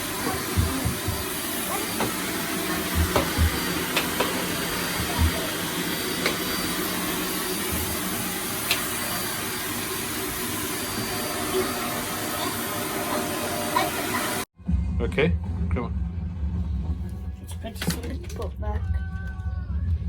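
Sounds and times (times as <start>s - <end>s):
vacuum cleaner motor whoosh: 0.0s - 14.5s.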